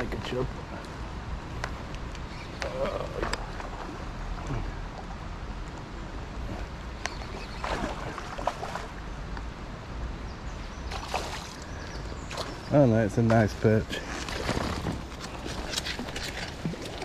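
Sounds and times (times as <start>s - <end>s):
crackling rustle: 13.9s - 17.0s.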